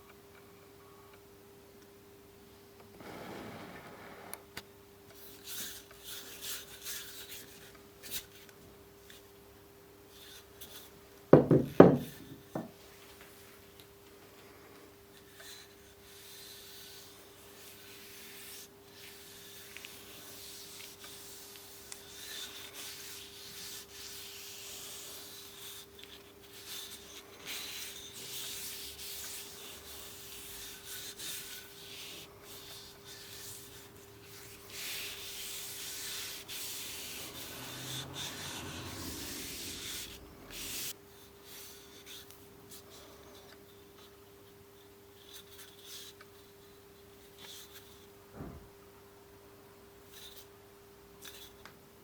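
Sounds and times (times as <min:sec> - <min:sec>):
faint steady hum: 0:00.0 - 0:52.0
hand rubbing on hammer: 0:26.6 - 0:40.9.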